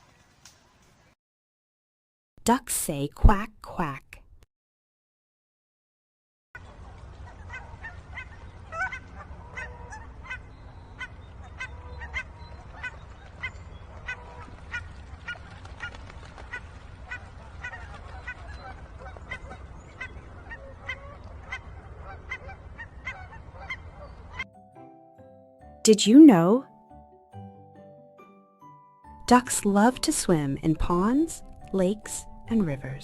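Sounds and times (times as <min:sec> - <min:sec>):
ducks quacking: 0:06.6 - 0:24.4.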